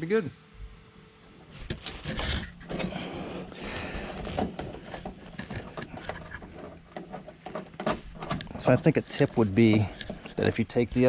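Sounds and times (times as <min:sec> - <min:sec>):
small clicks and knocks: 0:04.1 - 0:11.0
hands rubbing and scraping: 0:08.4 - 0:11.0.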